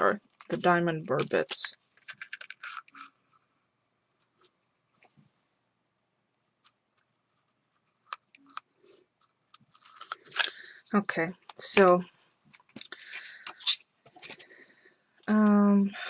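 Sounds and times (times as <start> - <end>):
small accessories clicking and rustling: 0.0 - 3.5, 4.1 - 5.4, 6.6 - 10.6, 11.4 - 14.5.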